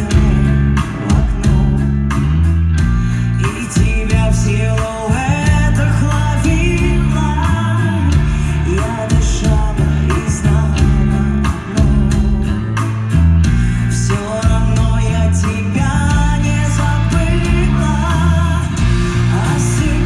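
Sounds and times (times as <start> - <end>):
drum hits: 0.0 - 5.8, 6.5 - 20.0
live band playing loudly: 0.0 - 20.0.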